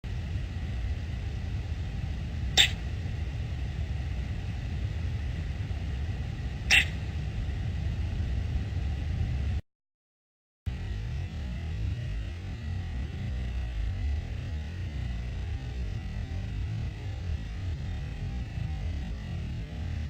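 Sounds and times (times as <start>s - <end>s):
steady low rumble: 0.0s - 9.6s, 10.7s - 20.0s
pet hiccup-like sounds: 2.6s - 2.8s, 6.7s - 7.0s.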